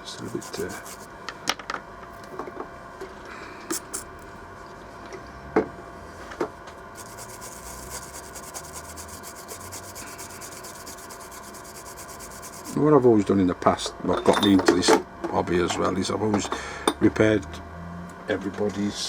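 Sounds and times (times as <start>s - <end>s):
rubbing strokes on circuit board: 0.0s - 1.1s, 7.0s - 12.8s.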